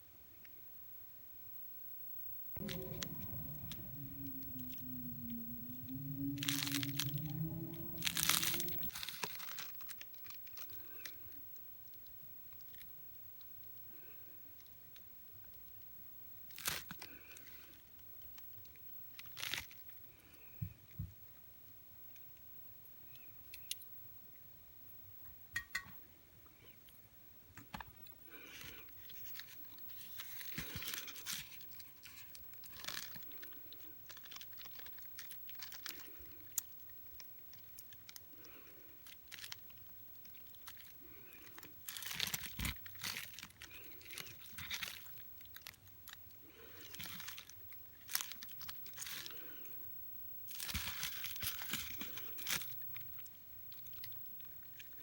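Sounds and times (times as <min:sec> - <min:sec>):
scraping and rustling strokes: 0:02.6 - 0:09.4.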